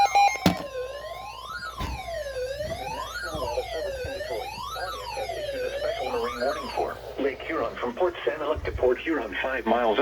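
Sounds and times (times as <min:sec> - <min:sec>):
siren wailing: 0:00.0 - 0:07.0.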